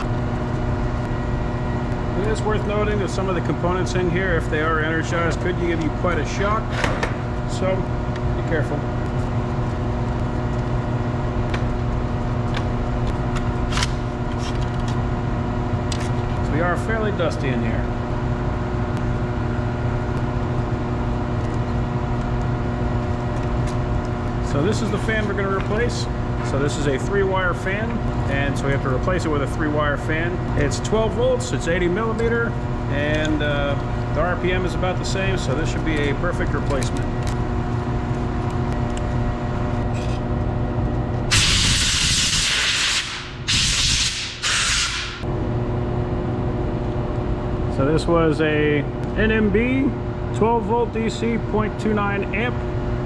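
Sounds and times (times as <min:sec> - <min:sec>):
industrial machinery hum: 0:00.0 - 0:53.0
compressed air hissing: 0:41.3 - 0:45.2.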